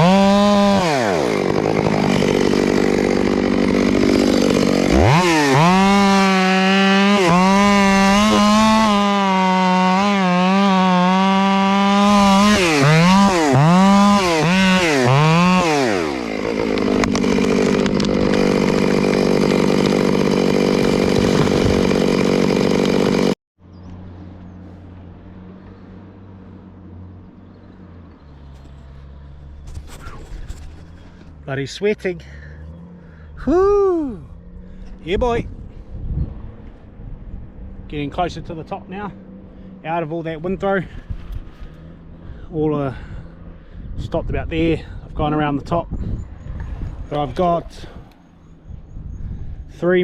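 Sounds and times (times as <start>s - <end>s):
chainsaw revving: 0.0s - 23.4s.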